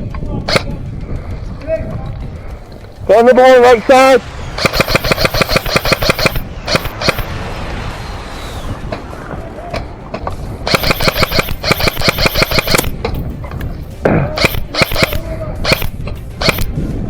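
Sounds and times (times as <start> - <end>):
airsoft gun firing: 0.5 - 0.9, 4.6 - 7.4, 10.7 - 16.8
gearbox whine: 3.9 - 16.7.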